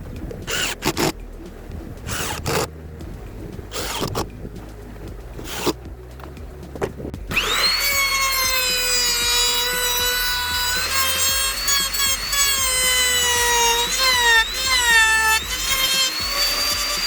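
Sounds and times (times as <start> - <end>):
power tool motor whining: 0.4 - 1.1, 2.1 - 2.7, 3.7 - 4.2, 5.4 - 5.8, 7.3 - 17.0.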